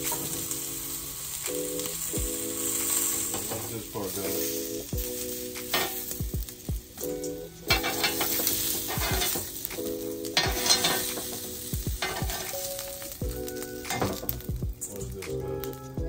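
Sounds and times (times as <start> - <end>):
octopus sizzling on a grill: 0.0 - 16.0.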